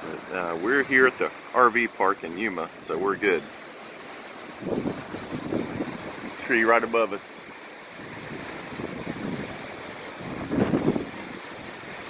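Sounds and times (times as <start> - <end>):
wind buffeting microphone: 4.4 - 6.5, 7.9 - 12.0.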